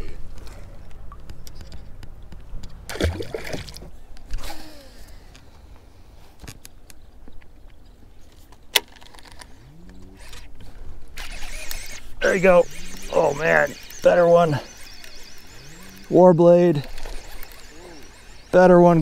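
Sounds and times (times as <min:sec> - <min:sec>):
water splashing around kayak: 0:02.9 - 0:03.9.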